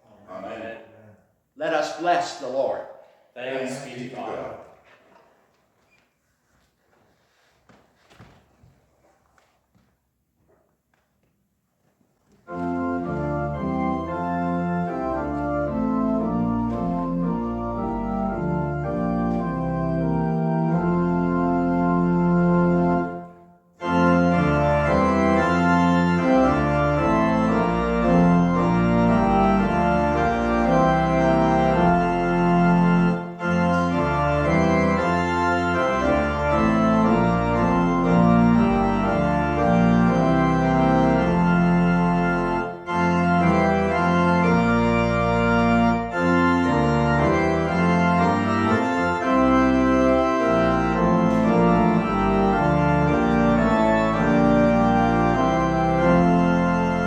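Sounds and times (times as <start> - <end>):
church organ chords: 12.5 - 57.0.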